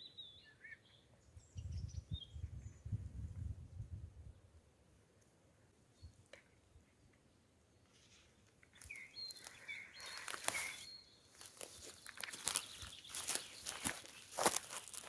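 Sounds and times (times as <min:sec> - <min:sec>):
footsteps crunching on forest litter: 0:08.7 - 0:15.0.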